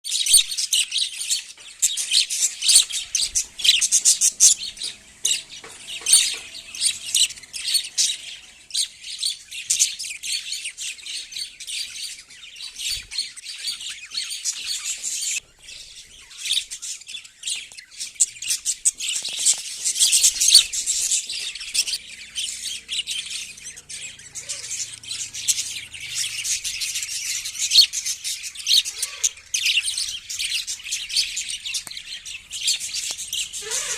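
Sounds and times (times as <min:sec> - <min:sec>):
small birds chirping: 0:00.0 - 0:33.9.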